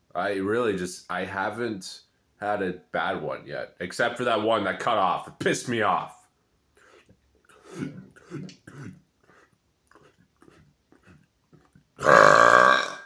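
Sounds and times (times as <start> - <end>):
man making throaty sounds: 7.6 - 11.3, 12.0 - 13.0
loud long burp: 12.0 - 13.0.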